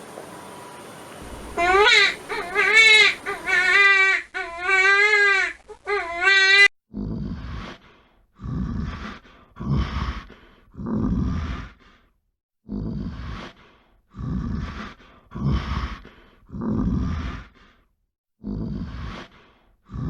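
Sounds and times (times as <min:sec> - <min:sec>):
animal grunting calls: 0:01.2 - 0:03.9
animal wailing cries: 0:01.2 - 0:06.7.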